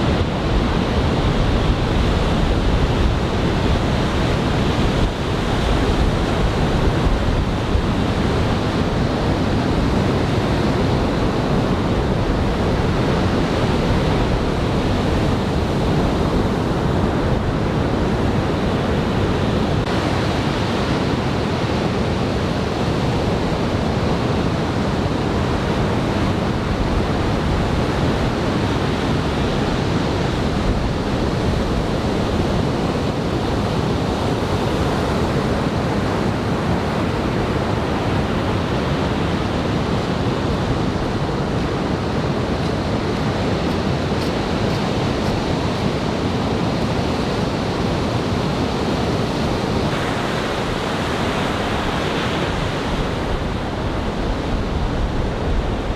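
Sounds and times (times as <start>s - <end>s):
waves breaking and washing ashore: 0.0s - 55.9s
wind buffeting microphone: 0.0s - 55.9s.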